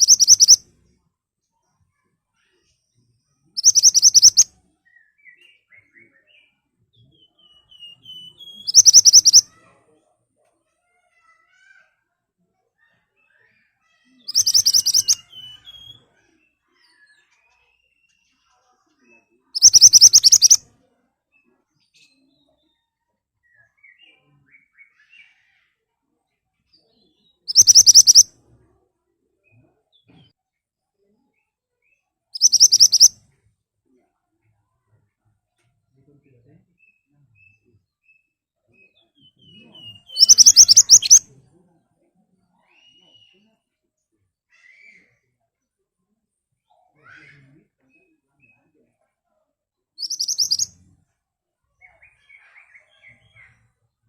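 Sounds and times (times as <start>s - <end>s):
songbird singing: 0.0s - 0.7s, 3.4s - 9.5s, 14.0s - 18.3s, 19.6s - 20.6s, 26.9s - 28.3s, 31.8s - 33.2s, 36.8s - 41.4s, 50.0s - 50.9s
faint soft chirps: 0.0s - 10.5s, 12.8s - 25.8s, 26.6s - 28.6s, 31.0s - 34.0s, 35.6s - 41.6s, 50.0s - 51.2s.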